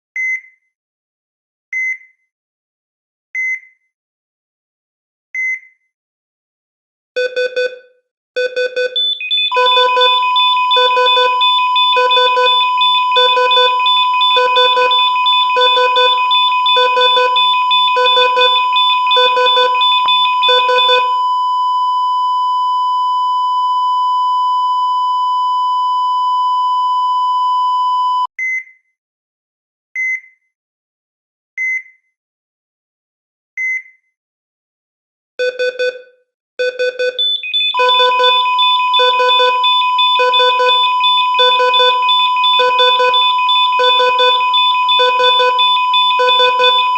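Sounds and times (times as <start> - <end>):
heart monitor beeps: 8.4 - 28.6, 35.4 - 46.9
pulsing alarm: 9.0 - 28.3, 37.2 - 46.9
flatline tone: 9.5 - 28.3, 37.8 - 46.9.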